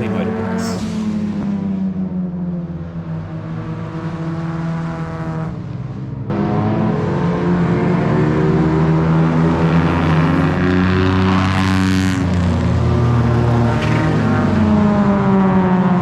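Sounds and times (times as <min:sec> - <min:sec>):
race car engines running: 0:00.0 - 0:01.2.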